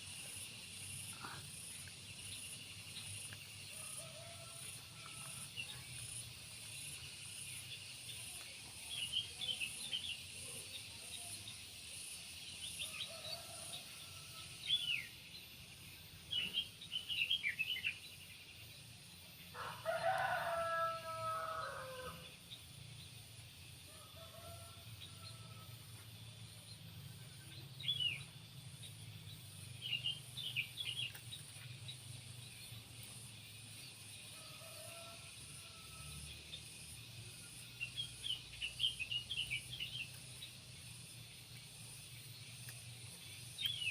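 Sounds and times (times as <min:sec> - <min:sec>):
small birds chirping: 0:00.0 - 0:23.4, 0:26.6 - 0:36.0
rooster crowing: 0:19.5 - 0:22.3, 0:23.9 - 0:26.0, 0:34.4 - 0:36.2.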